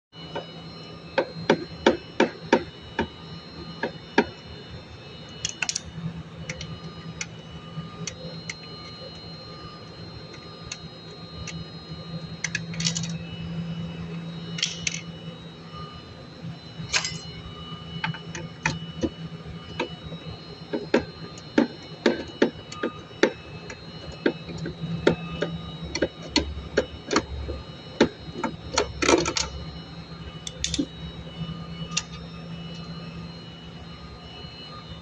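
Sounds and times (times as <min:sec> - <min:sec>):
steady low hum: 0:00.1 - 0:35.0
hand tools tapping and clicking: 0:20.7 - 0:27.3.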